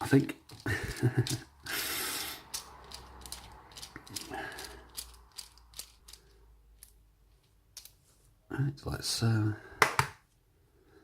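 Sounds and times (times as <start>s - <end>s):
padlock and pick tools clicking: 2.4s - 7.0s.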